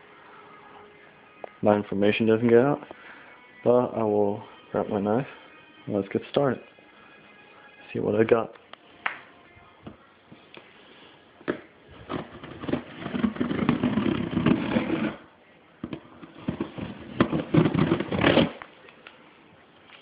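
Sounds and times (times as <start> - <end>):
cardboard box scraping and tearing: 12.1 - 15.2, 16.4 - 18.6.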